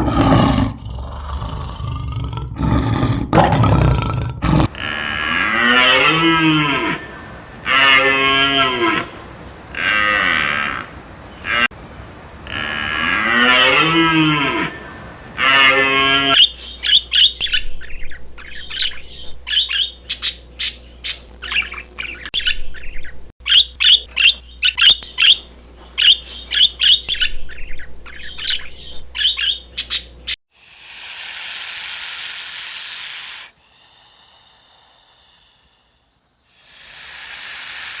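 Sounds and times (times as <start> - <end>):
low moo-like call: 4.7 - 11.7, 12.4 - 16.4
loud hiss-like noise: 6.6 - 13.1, 14.7 - 15.4, 30.5 - 38.0
bird chirping: 30.6 - 38.0.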